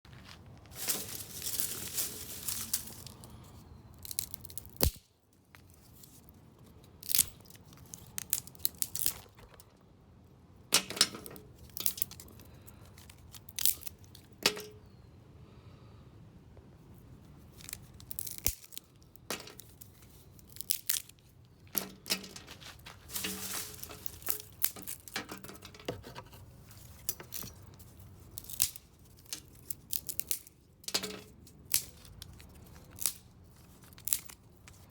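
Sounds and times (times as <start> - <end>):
tree branches snapping: 4.0 - 5.0, 7.0 - 9.6, 17.6 - 18.8.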